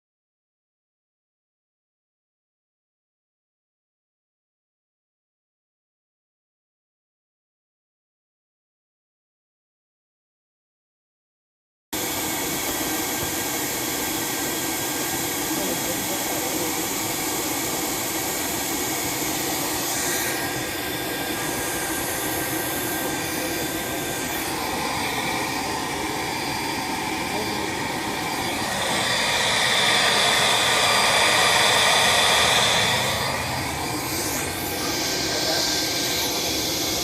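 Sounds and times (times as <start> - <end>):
appliance motor whooshing air: 12.0 - 37.0.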